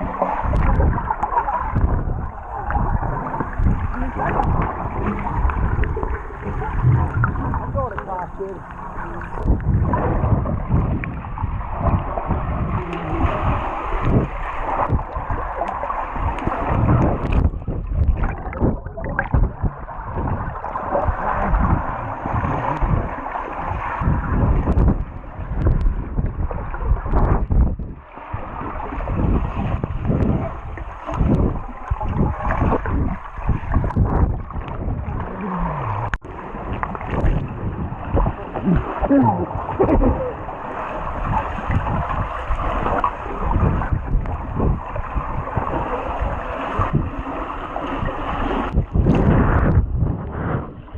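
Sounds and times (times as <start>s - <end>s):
low thumps in water: 0.0s - 46.0s, 47.8s - 50.9s
pool water splashing and gurgling: 0.0s - 50.9s.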